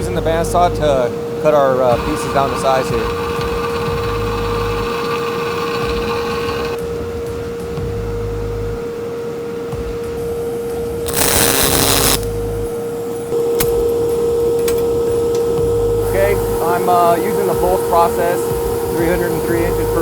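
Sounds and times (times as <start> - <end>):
loud hiss: 0.0 - 6.8, 10.1 - 20.0
bandsaw cutting steel: 1.5 - 6.8, 11.1 - 12.4.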